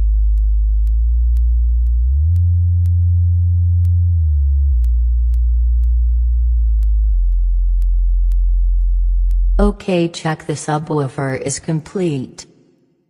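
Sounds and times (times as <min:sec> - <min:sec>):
light ticks: 0:00.0 - 0:09.5
sub-bass test tones: 0:00.0 - 0:10.8.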